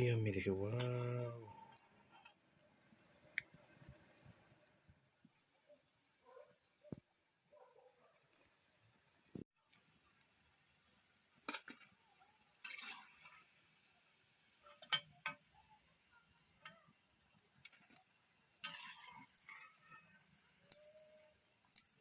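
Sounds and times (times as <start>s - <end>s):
faint steady hiss: 0.0s - 22.0s
cooking utensils clinking: 14.7s - 15.5s.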